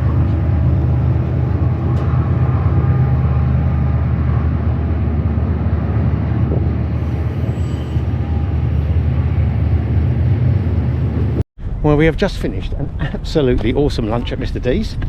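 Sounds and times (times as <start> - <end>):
motor vehicle low rumble: 0.0 - 15.0.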